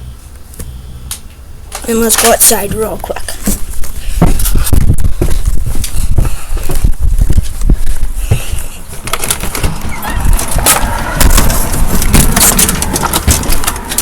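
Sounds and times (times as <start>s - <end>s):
footsteps: 1.8s - 14.0s
microphone handling rumble: 2.6s - 14.0s
handling knocks and clicks: 8.9s - 14.0s.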